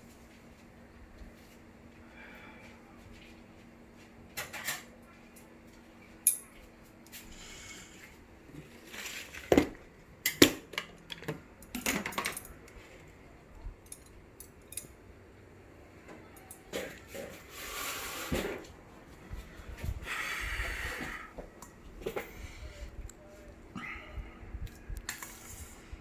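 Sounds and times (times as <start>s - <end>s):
utensils clinking against bowl: 10.2s - 12.7s.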